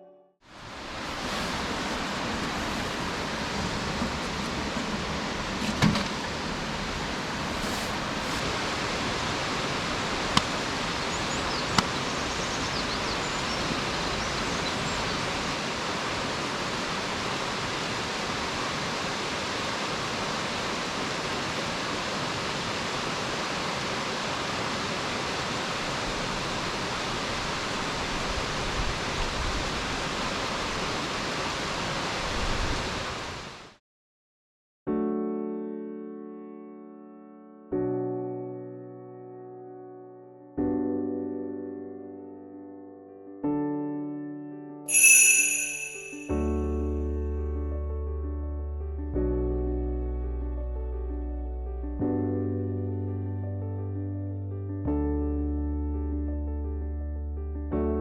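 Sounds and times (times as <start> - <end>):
waterfall rushing: 0.6 - 5.6, 6.2 - 33.4.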